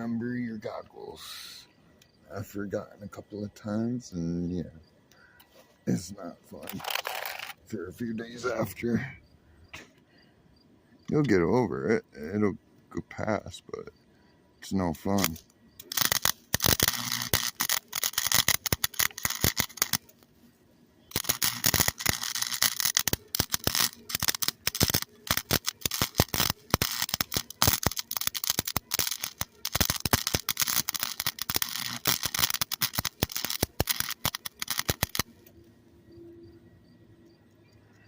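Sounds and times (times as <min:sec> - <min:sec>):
welder arc crackling: 0:06.5 - 0:07.6, 0:15.0 - 0:20.3, 0:21.1 - 0:35.6.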